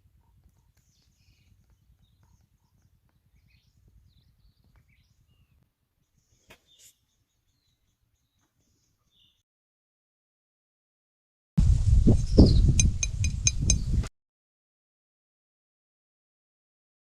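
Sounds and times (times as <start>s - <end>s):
small birds chirping: 0.2s - 9.4s, 12.1s - 14.0s.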